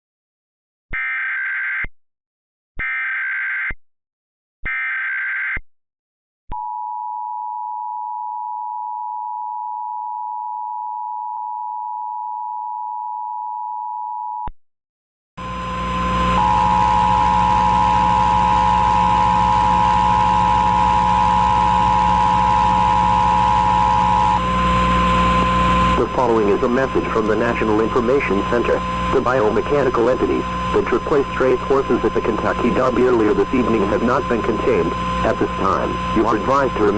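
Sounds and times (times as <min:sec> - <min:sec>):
buzzy digital data bursts: 0:15.4 - 0:36.9
hissing static: 0:15.4 - 0:36.9
steady hum and tones: 0:15.4 - 0:36.9
two-tone attention signal: 0:16.2 - 0:26.4.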